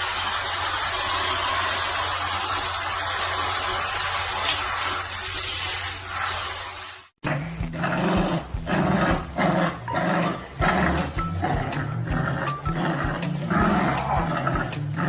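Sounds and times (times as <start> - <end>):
dog growling: 7.2 - 15.0.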